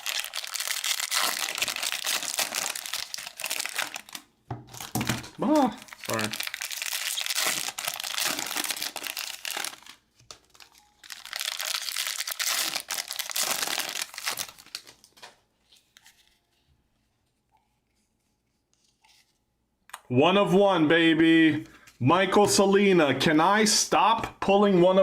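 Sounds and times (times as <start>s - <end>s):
foil wrappers crinkling and tearing: 0.0s - 15.3s.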